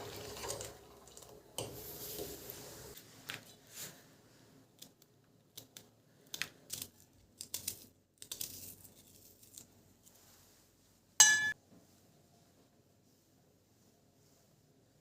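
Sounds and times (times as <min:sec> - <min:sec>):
hard object ringing clink: 0:11.2 - 0:11.6.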